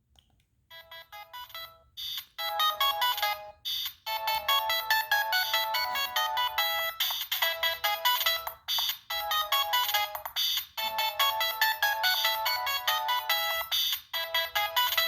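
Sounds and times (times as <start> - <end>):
phone ringtone melody: 0.7 - 15.0.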